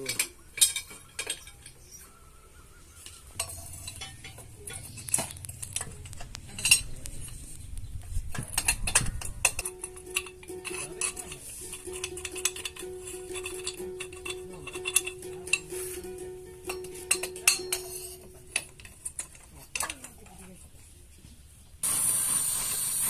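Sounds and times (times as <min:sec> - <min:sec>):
tools clinking on metal: 0:00.0 - 0:02.2, 0:03.0 - 0:07.6, 0:08.3 - 0:20.6.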